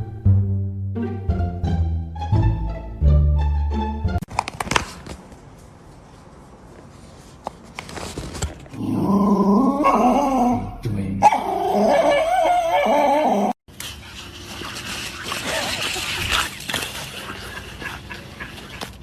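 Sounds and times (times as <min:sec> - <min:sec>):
dog howling with wavering pitch: 0:09.5 - 0:13.6.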